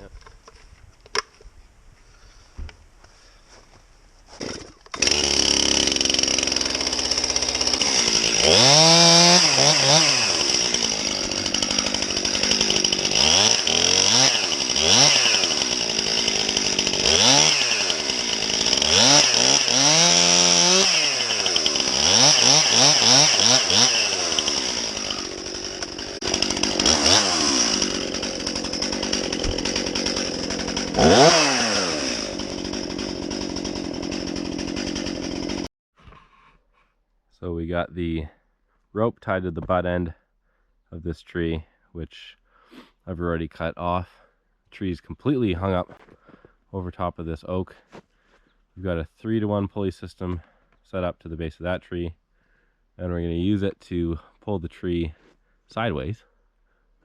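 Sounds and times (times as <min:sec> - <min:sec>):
chainsaw cutting: 0:04.3 - 0:35.7.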